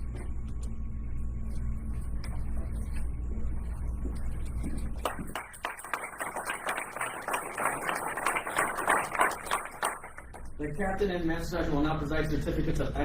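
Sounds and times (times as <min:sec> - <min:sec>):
low steady hum: 0:00.0 - 0:13.0
audience applauding: 0:05.0 - 0:10.5.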